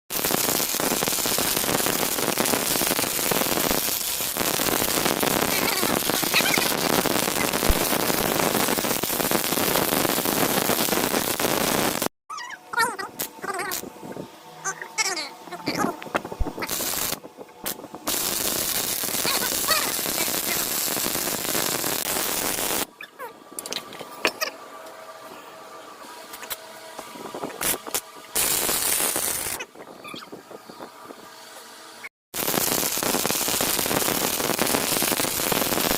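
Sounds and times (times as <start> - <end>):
welding arc crackling: 0.1 - 12.1, 13.1 - 13.9, 15.6 - 22.9, 27.4 - 29.7, 32.4 - 35.9.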